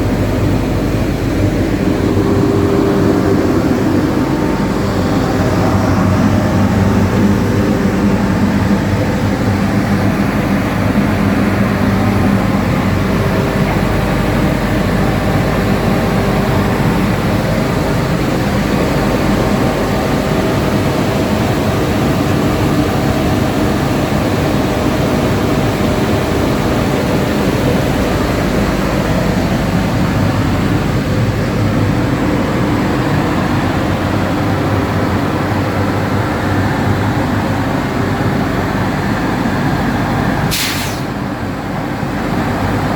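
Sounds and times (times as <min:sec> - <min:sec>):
drilling rig machinery humming: 0:00.0 - 0:42.9.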